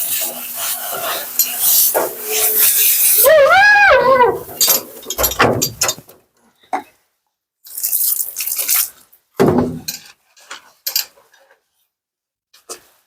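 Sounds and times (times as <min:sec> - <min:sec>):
bath sprayer hissing spray: 0:00.0 - 0:03.4
dog howling woo: 0:02.2 - 0:04.6.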